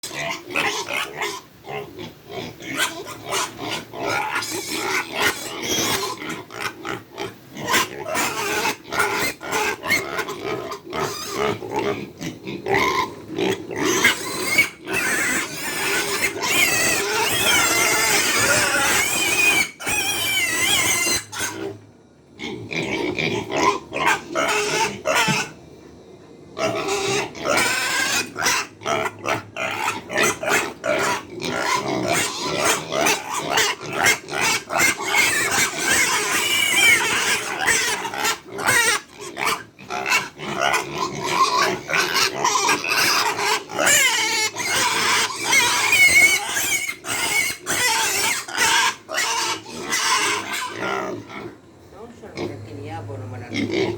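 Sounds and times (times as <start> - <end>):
pigs squealing: 0.0 - 21.8, 22.4 - 25.6, 26.6 - 52.6, 53.4 - 53.9.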